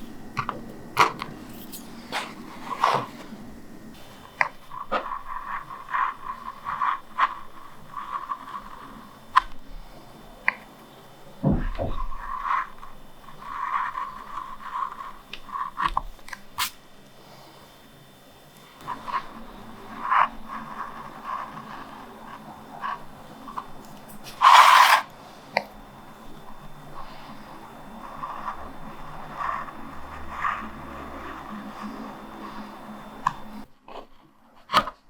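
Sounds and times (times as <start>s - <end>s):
lino cutter scraping: 0.4s - 3.4s, 18.8s - 25.1s
low thump: 11.4s - 12.2s.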